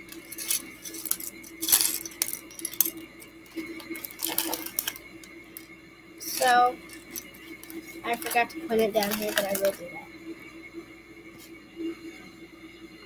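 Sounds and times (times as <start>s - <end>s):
plastic pieces clicking: 0.0s - 5.1s, 6.2s - 9.8s
faint steady hum: 0.0s - 13.0s.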